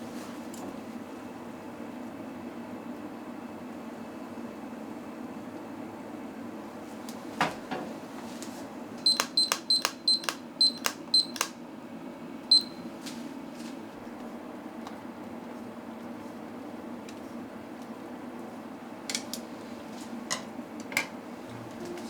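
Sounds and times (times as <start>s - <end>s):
appliance button beeps: 9.0s - 11.6s, 12.5s - 12.9s.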